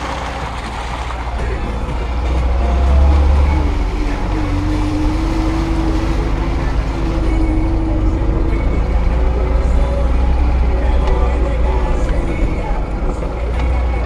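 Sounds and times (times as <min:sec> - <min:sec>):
car engine low rumble: 0:00.0 - 0:14.0
drivetrain whine: 0:00.0 - 0:14.0.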